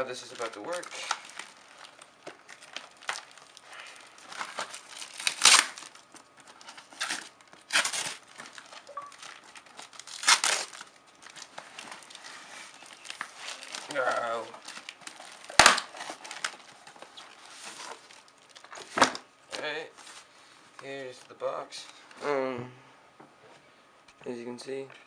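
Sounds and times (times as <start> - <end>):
packaging ripping: 0.0 - 19.2
packaging crinkling and rustling: 0.0 - 22.0.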